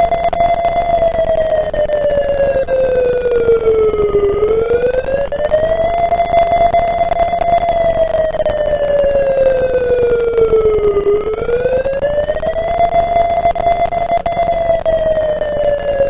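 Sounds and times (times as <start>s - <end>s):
siren steady tone: 0.0s - 16.0s.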